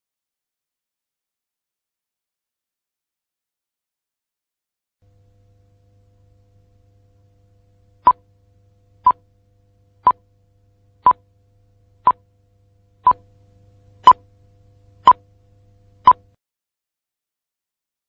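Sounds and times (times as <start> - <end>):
faint low hum: 5.0 - 16.4
faint steady tone: 5.0 - 16.4.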